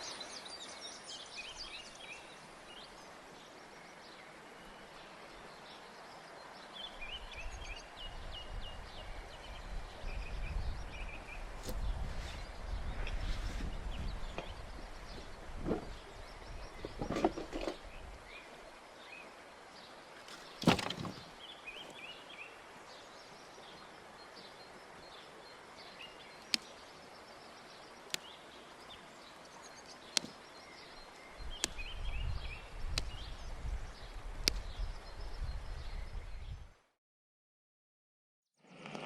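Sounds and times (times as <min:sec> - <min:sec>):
small birds chirping: 0:00.0 - 0:36.7
single sharp clicks: 0:28.1 - 0:28.3, 0:30.1 - 0:30.4.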